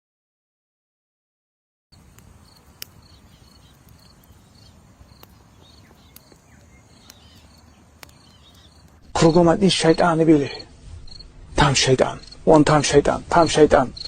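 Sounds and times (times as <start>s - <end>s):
crickets chirping: 1.9s - 11.3s, 12.0s - 12.5s
sharp clicks: 2.1s - 9.0s.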